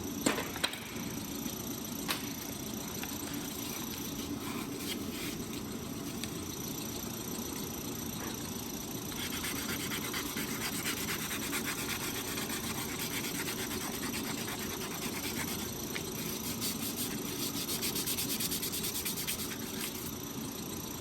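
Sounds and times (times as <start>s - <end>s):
sandpaper rubbing on steel shaft: 9.1s - 20.1s.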